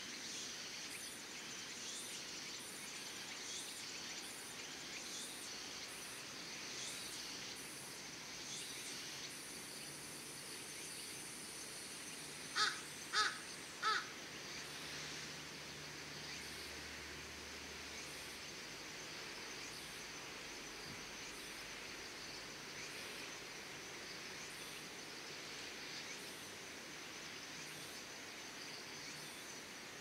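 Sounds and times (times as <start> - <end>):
insects chirping: 0.0 - 30.0
crow cawing: 12.6 - 14.1.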